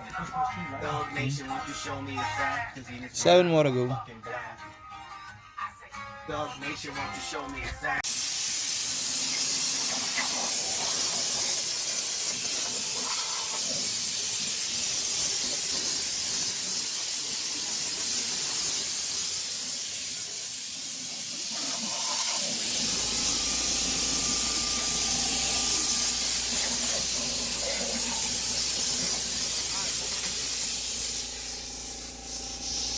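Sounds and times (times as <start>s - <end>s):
pressurised spray hissing: 8.0s - 32.9s.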